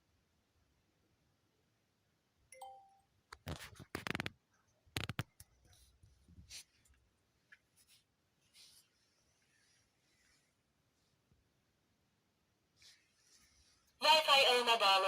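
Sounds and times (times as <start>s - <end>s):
two-note electronic chime: 2.6s - 3.1s.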